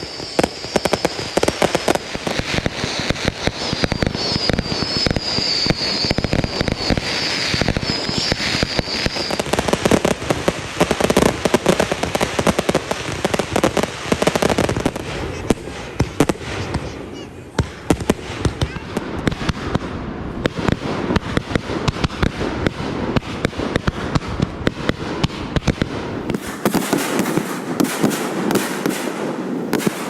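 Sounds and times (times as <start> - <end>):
fireworks bangs and crackling: 0.0 - 30.0
high wavering whistle: 2.9 - 9.5.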